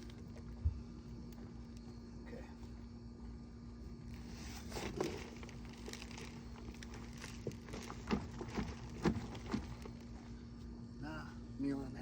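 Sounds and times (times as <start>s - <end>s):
plants rustling and crackling: 4.1s - 10.4s.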